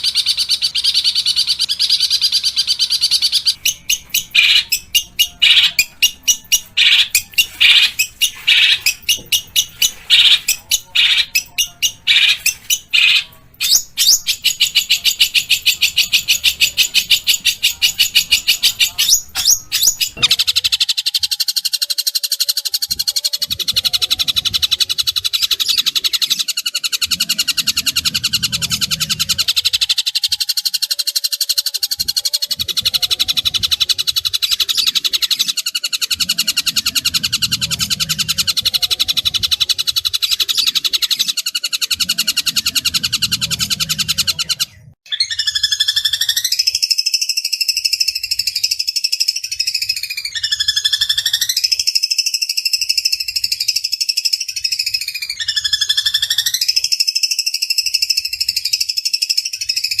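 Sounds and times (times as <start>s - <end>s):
bird harsh call with dipping pitch: 0.0s - 20.8s
bird harsh chatter: 0.0s - 47.0s.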